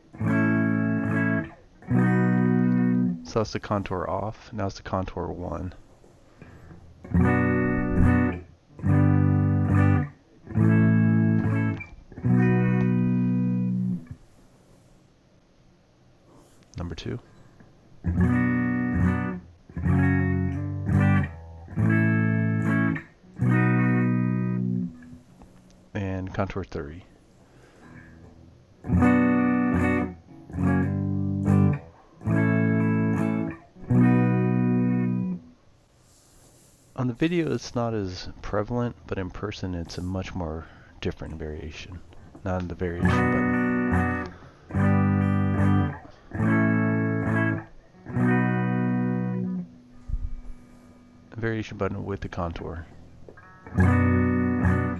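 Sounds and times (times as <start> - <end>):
electric guitar strummed chords: 0.0 - 3.9, 6.4 - 14.2, 18.0 - 26.0, 27.5 - 35.6, 39.8 - 54.9.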